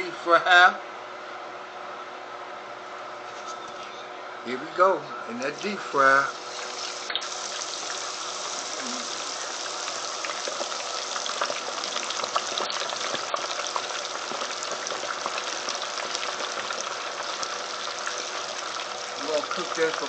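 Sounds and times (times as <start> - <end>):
oil bubbling and crackling: 5.4 - 20.0.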